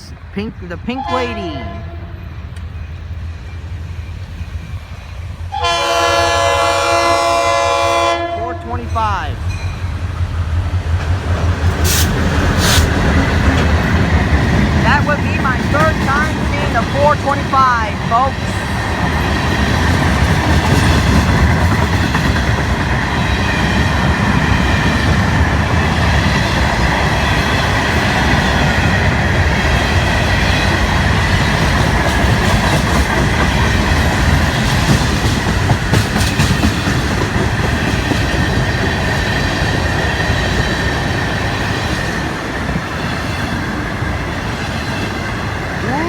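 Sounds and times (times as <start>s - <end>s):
high squeal from train wheels: 11.7s - 13.1s
train wheels clattering over rail joints: 30.6s - 43.6s.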